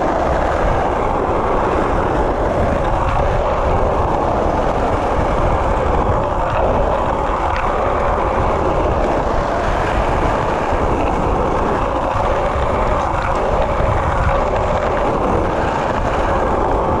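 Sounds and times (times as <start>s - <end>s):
skateboard wheels rolling on pavement: 0.0s - 17.0s.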